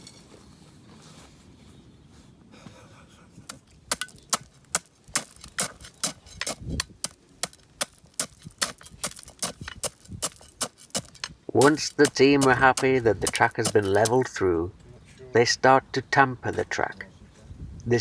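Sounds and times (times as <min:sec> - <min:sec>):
bars knocking against ballast stone: 0:03.5 - 0:14.3.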